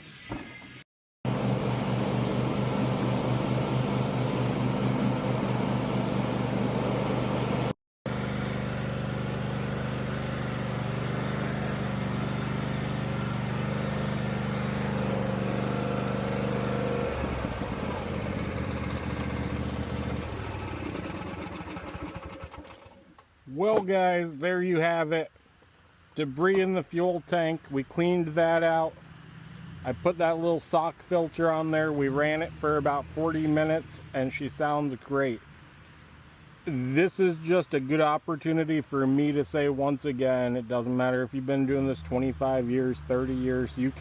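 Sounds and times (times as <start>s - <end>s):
lawn mower engine running: 1.3s - 23.9s.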